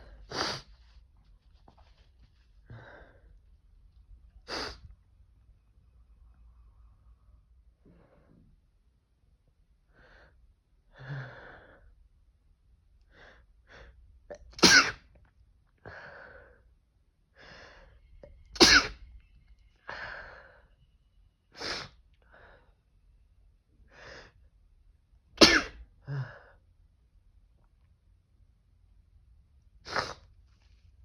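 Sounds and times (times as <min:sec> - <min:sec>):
person sneezing: 0:14.6 - 0:15.0, 0:18.6 - 0:19.0, 0:25.4 - 0:26.2, 0:29.9 - 0:30.3.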